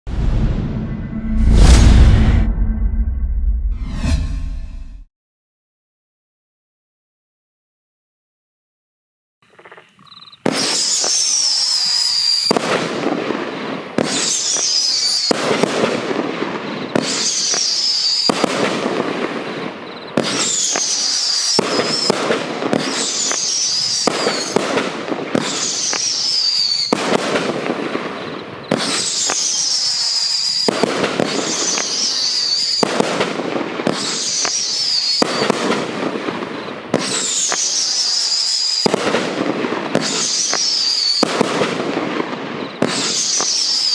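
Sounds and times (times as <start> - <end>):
firework shots whistling: 10.4 - 12.8, 14.0 - 43.9
firework stars crackling: 10.4 - 43.9.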